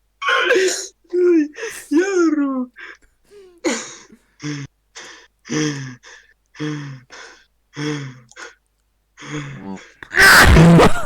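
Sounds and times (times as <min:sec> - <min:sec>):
man gasping breathily: 0:02.8 - 0:08.6.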